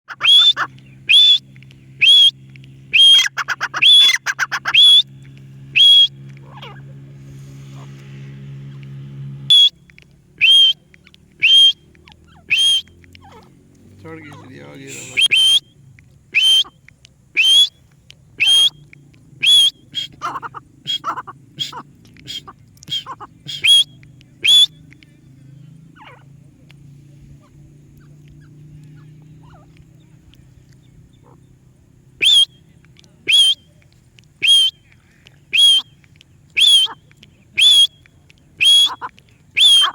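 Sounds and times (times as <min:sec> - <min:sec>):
parrot chirps: 0:00.1 - 0:01.4, 0:02.9 - 0:05.0, 0:10.4 - 0:13.5, 0:15.1 - 0:15.7, 0:17.4 - 0:17.8, 0:18.4 - 0:24.8, 0:28.0 - 0:29.8, 0:32.2 - 0:32.6, 0:36.6 - 0:38.0, 0:38.6 - 0:39.9
parrot whistling: 0:00.1 - 0:01.4, 0:02.0 - 0:05.1, 0:05.7 - 0:06.1, 0:09.5 - 0:09.8, 0:10.4 - 0:10.8, 0:11.4 - 0:13.4, 0:15.1 - 0:15.7, 0:16.3 - 0:16.8, 0:17.4 - 0:17.8, 0:18.4 - 0:18.8, 0:19.4 - 0:24.8, 0:32.2 - 0:32.6, 0:33.3 - 0:33.6, 0:34.4 - 0:34.8, 0:35.5 - 0:36.0, 0:36.6 - 0:37.0, 0:37.6 - 0:38.0, 0:38.6 - 0:39.9
low steady hum: 0:00.2 - 0:39.9
faint chirps: 0:09.5 - 0:39.9.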